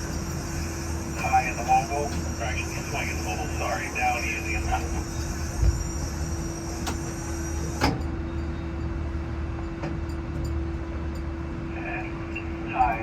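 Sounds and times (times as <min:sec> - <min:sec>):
machinery hum: 0:00.0 - 0:13.0.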